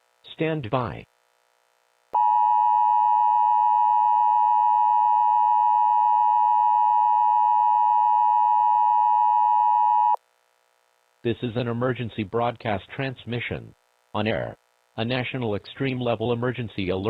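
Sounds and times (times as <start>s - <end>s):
two-tone electronic alarm: 2.2s - 10.2s.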